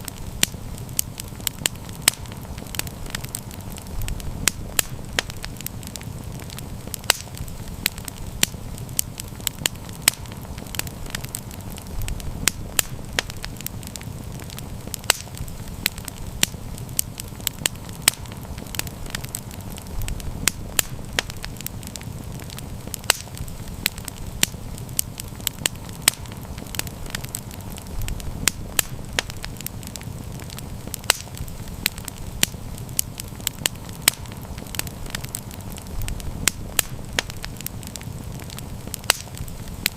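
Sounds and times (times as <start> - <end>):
campfire crackling and popping: 0.0 - 39.9.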